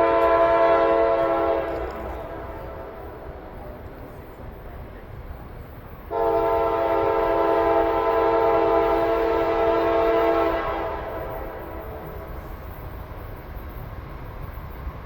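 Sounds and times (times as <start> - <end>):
locomotive air horn chord: 0.0 - 3.4, 6.1 - 12.4.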